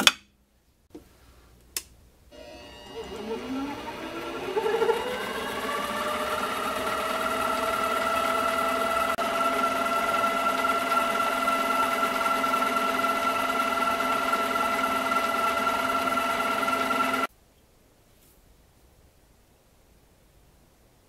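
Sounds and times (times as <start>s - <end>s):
metal lathe motor whining: 2.4s - 17.3s.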